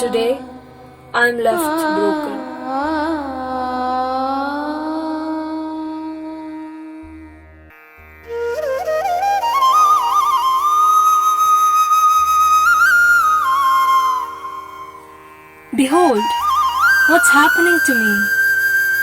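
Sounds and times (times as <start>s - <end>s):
solo flute melody: 8.3s - 19.0s.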